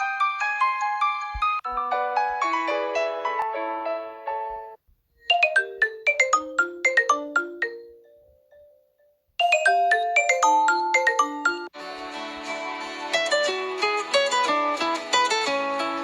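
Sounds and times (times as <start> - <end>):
mobile phone ringtone melodies: 5.2 - 11.8.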